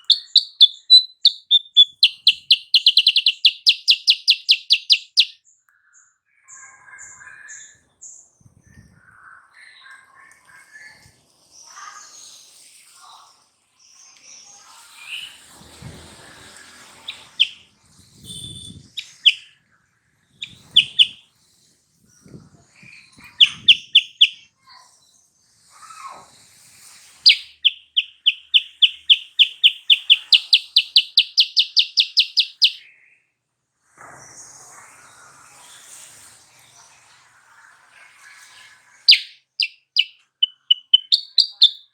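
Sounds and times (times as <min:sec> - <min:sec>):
bird rapid repeated notes: 0:00.0 - 0:05.4, 0:20.5 - 0:21.2, 0:23.4 - 0:24.4, 0:27.3 - 0:32.8, 0:39.1 - 0:41.9
bird chirping: 0:00.0 - 0:06.0, 0:16.8 - 0:17.7, 0:18.3 - 0:19.5, 0:20.4 - 0:21.2, 0:23.2 - 0:24.5, 0:27.2 - 0:32.8, 0:39.1 - 0:41.9.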